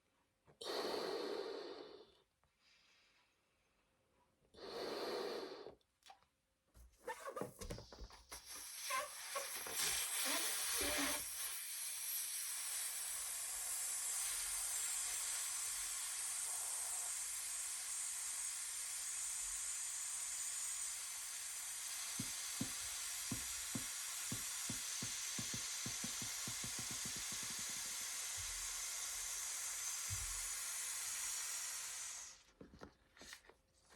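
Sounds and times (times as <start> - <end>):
air hissing out of a balloon: 4.6 - 5.7, 8.3 - 32.5.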